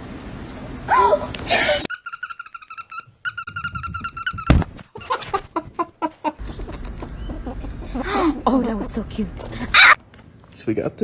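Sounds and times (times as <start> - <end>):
animal pulsing trills: 6.6 - 9.7.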